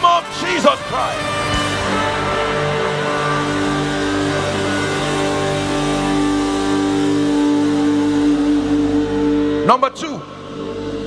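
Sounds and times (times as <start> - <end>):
trumpet long held notes: 0.0 - 11.0
worship music: 0.0 - 11.0.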